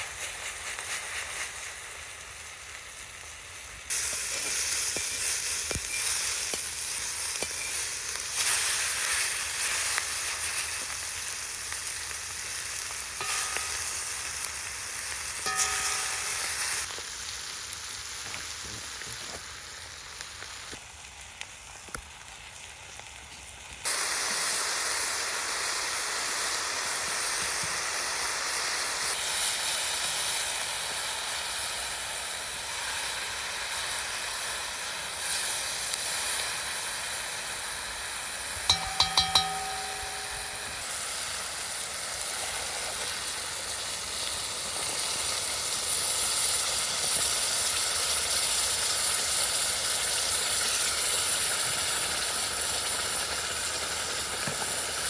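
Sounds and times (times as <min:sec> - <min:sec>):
meat sizzling over campfire: 0:00.0 - 0:55.0
ringing clinks: 0:13.2 - 0:14.5, 0:15.5 - 0:16.8, 0:38.7 - 0:42.7.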